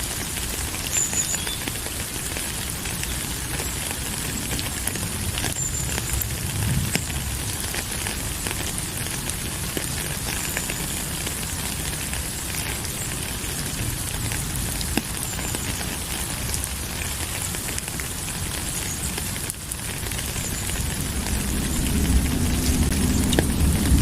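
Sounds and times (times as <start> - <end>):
steady rain falling: 0.0 - 24.0
low rumble: 5.6 - 8.4, 20.8 - 24.0.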